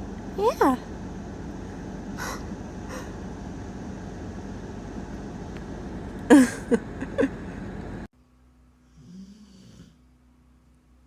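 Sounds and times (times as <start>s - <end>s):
short breathy huffs: 2.2s - 3.2s.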